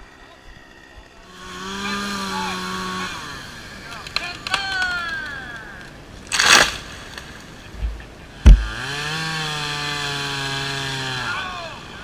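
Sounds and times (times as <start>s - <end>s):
chainsaw engine running: 0.0s - 5.3s, 8.4s - 12.0s
sharp loud knock: 8.4s - 8.7s.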